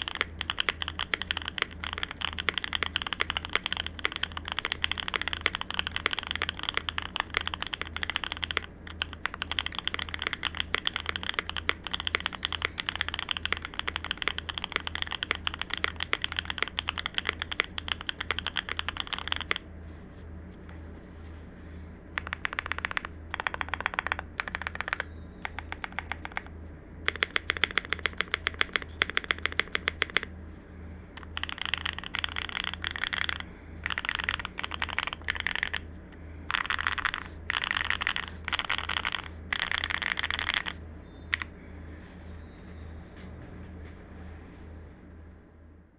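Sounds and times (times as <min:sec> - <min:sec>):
fast mechanical keyboard typing: 0:00.0 - 0:19.6, 0:22.2 - 0:26.5, 0:27.1 - 0:30.3, 0:31.2 - 0:35.9, 0:36.5 - 0:41.5.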